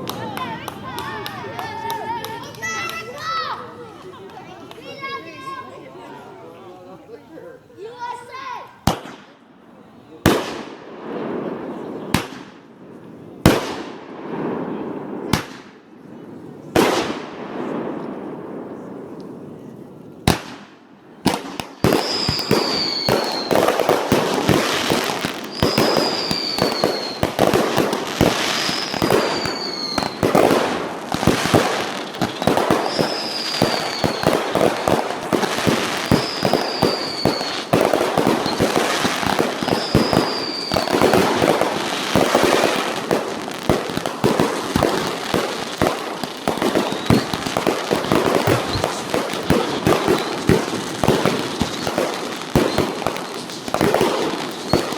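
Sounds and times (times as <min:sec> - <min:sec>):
fireworks bangs and crackling: 0:00.0 - 0:06.7, 0:07.8 - 0:54.9
falling whistle: 0:22.0 - 0:23.6, 0:25.5 - 0:27.2, 0:28.7 - 0:30.2, 0:39.8 - 0:40.9.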